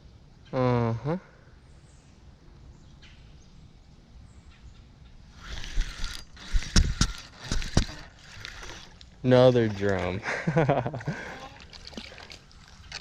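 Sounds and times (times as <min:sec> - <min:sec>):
fishing gear clicks and knocks: 0:11.6 - 0:13.0.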